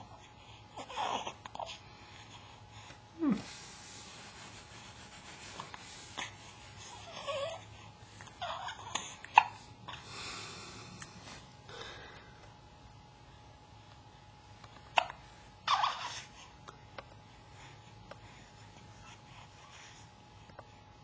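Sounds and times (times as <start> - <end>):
soft breathing: 0.0 - 12.6, 13.2 - 21.0
baby hiccuping: 15.0 - 16.2.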